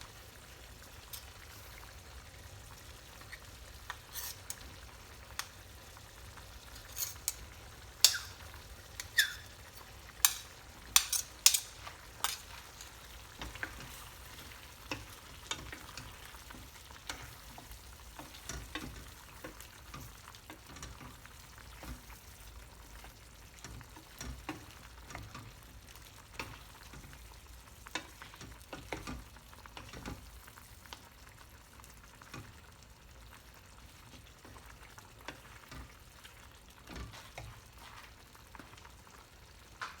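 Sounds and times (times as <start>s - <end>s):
food sizzling in a pan: 0.0s - 40.0s
utensil scraping a pan: 3.1s - 5.5s, 6.3s - 16.4s
utensil clinking against pan: 6.6s - 13.8s.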